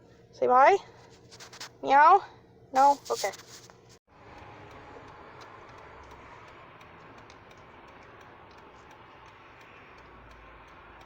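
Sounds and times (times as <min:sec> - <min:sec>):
turn signal ticking: 0:04.1 - 0:11.0.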